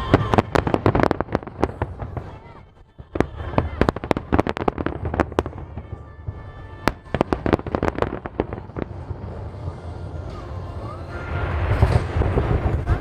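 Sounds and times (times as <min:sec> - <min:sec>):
fireworks bangs and cracks: 0:00.0 - 0:13.0.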